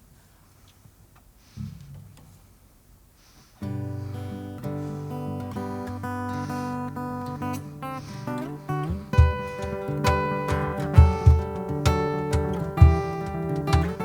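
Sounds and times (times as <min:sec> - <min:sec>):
acoustic guitar chords: 0:03.6 - 0:14.0
strong low beats: 0:09.2 - 0:09.6, 0:11.0 - 0:12.0, 0:12.8 - 0:13.2.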